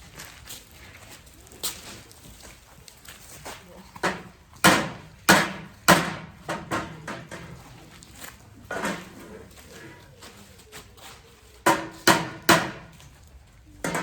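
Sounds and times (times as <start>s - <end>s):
hammer striking nails: 4.6s - 6.2s, 11.7s - 12.8s.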